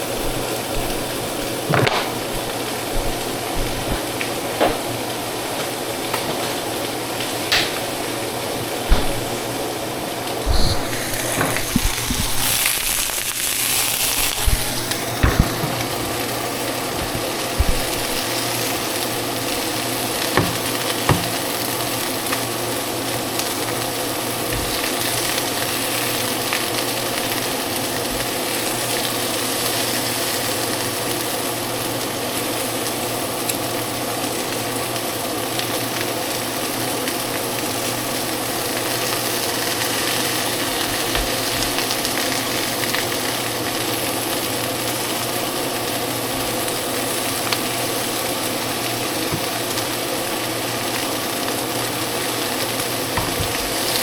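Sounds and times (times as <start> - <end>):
steady hum: 0.0 - 21.9
food sizzling in a frying pan: 0.0 - 54.0.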